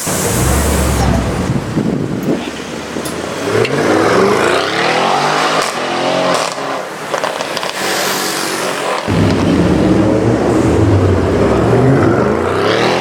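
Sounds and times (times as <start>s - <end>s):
exhaust cracks: 0.0s - 2.6s, 9.1s - 13.0s
deep heavy engine rumble: 0.0s - 3.4s, 9.1s - 13.0s
car engine accelerating hard: 0.0s - 7.7s, 8.8s - 13.0s.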